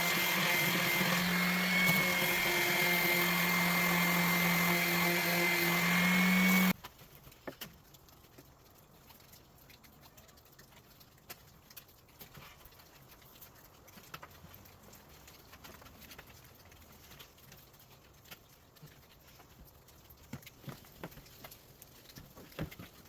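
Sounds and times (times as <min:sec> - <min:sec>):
power tool motor whining: 0:00.0 - 0:06.7.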